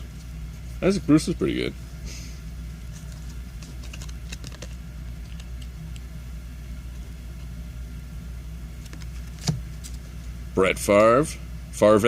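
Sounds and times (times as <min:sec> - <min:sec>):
steady low hum: 0:00.0 - 0:12.0
trading cards clicking: 0:03.1 - 0:06.0.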